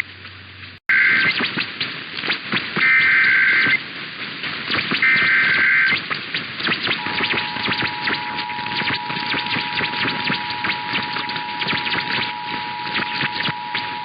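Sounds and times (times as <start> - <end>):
crackling static: 0.0 - 14.0
two-tone alert alarm: 0.9 - 1.6, 2.8 - 3.8, 4.9 - 6.0, 6.7 - 14.0.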